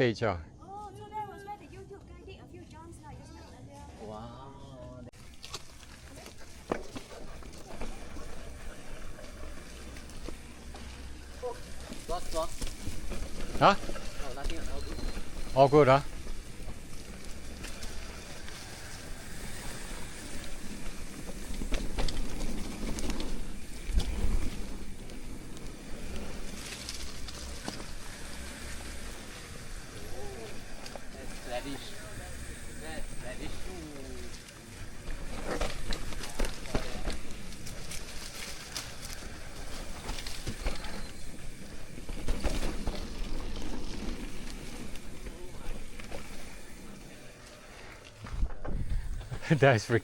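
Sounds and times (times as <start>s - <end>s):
bike tyre rumble on dirt: 5.1s - 50.0s
bike clicks and rattles: 5.2s - 31.8s, 33.2s - 49.4s
bike knocks and rattles: 20.6s - 29.1s, 35.0s - 46.6s
wind on microphone: 48.3s - 49.4s.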